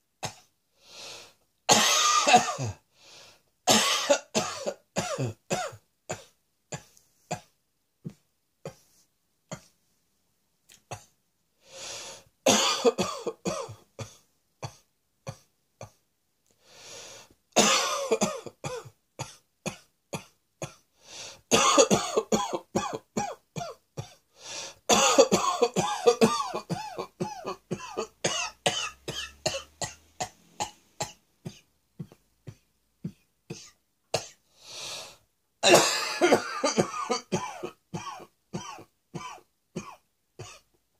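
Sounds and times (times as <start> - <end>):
person coughing: 1.7 - 2.8, 3.7 - 7.5, 12.5 - 16.0, 17.6 - 20.8, 21.5 - 24.2, 24.8 - 34.4, 35.6 - 40.7.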